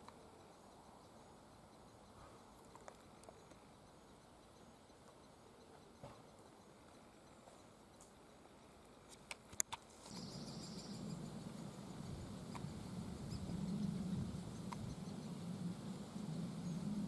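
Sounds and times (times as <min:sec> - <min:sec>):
sharp clicks: 0:09.1 - 0:10.2
woodpecker nestlings chattering: 0:09.9 - 0:16.0
steady low rumble: 0:10.1 - 0:17.0.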